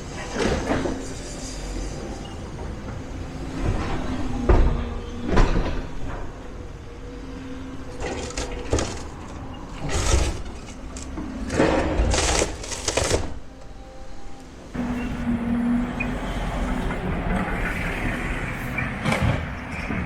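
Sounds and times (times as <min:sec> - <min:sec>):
excavator engine hum: 0:00.0 - 0:20.0
debris crunching and crashing: 0:07.9 - 0:13.5.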